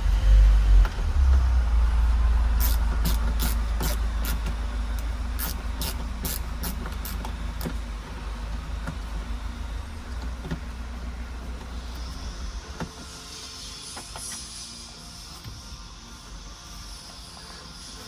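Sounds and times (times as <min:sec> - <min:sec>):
low rumble: 0:00.0 - 0:15.1
hand tool clicking: 0:05.4 - 0:07.7.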